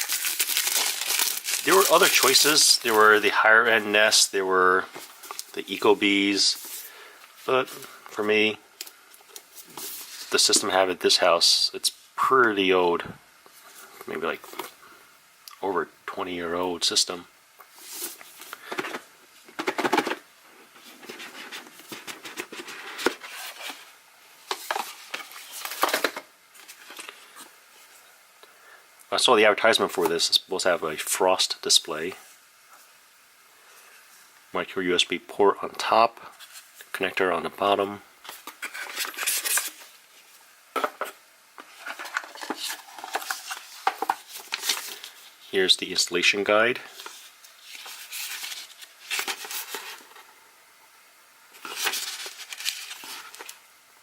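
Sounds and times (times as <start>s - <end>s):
packaging rustling and scraping: 0.0s - 7.9s, 9.3s - 10.7s, 17.7s - 28.0s, 38.2s - 45.6s, 46.9s - 50.3s, 51.5s - 53.6s.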